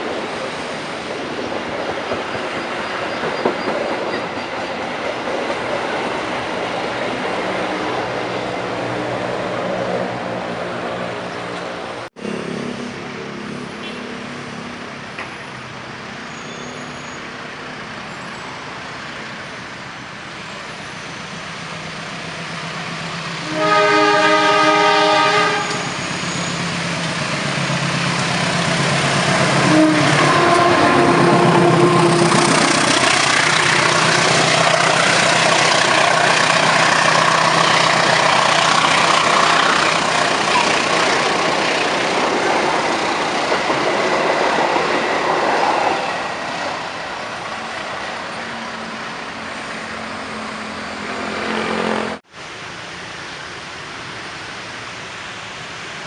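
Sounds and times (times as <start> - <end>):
train running past: 0.0 - 56.0
train horn multi-note blast: 23.4 - 25.9, 29.6 - 32.7.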